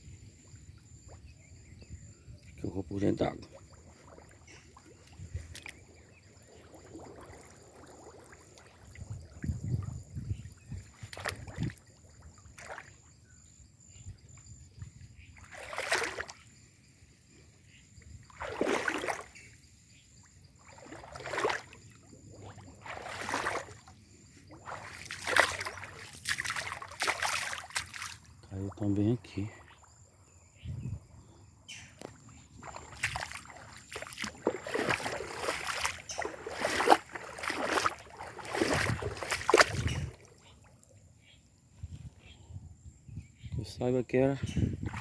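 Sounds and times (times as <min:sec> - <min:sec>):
wading through water splashing: 0:03.0 - 0:13.1, 0:15.2 - 0:16.6, 0:18.1 - 0:30.1, 0:32.1 - 0:40.9, 0:44.6 - 0:45.0.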